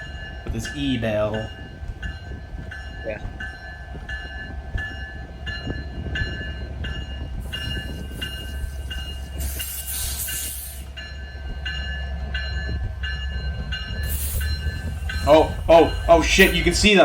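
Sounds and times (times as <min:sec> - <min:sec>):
locomotive electronic bell ringing: 0:00.0 - 0:17.0
train rumble: 0:00.0 - 0:17.0
hiss burst: 0:09.4 - 0:10.8, 0:14.0 - 0:14.5.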